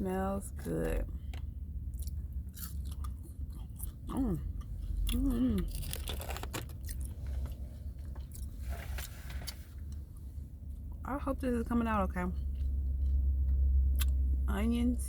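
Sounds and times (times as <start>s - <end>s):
person chewing crunchy food: 1.4s - 9.2s.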